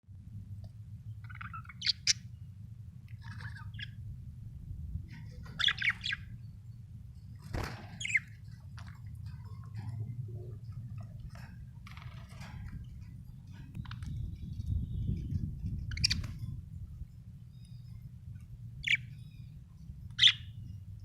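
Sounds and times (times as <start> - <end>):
low hum: 0.1 - 21.0
budgerigar chirping: 1.2 - 2.3, 3.1 - 4.0, 5.5 - 6.3, 18.8 - 19.1, 20.2 - 20.6.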